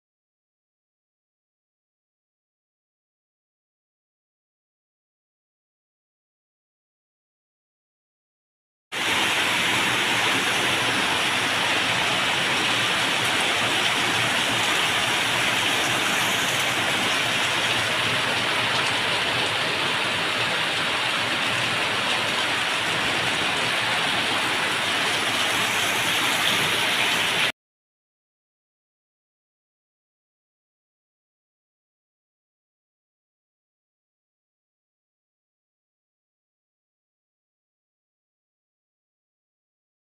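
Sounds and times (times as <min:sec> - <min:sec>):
heavy rain falling: 0:09.0 - 0:27.5.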